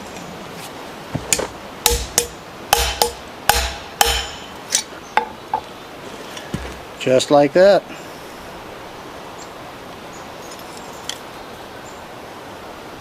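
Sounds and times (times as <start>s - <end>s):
hammer striking metal anvil: 1.8s - 4.6s.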